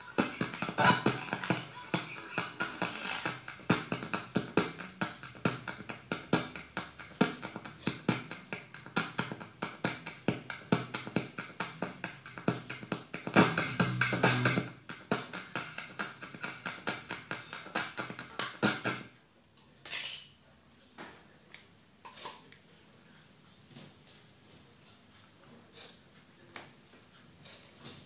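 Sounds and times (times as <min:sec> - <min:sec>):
music with fast percussive beat: 0:00.0 - 0:19.0.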